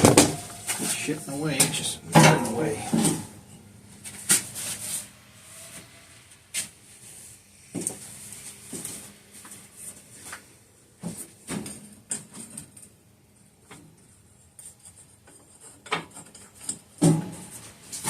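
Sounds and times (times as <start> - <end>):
objects knocking and rattling: 0.0 - 1.0, 15.2 - 18.0.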